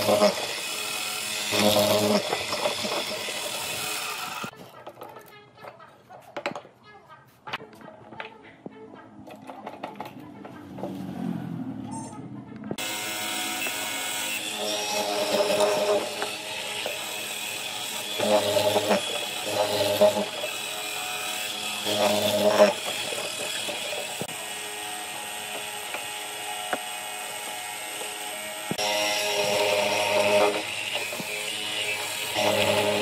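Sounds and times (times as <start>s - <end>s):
power tool cutting wood: 0.0s - 4.5s, 12.8s - 33.0s.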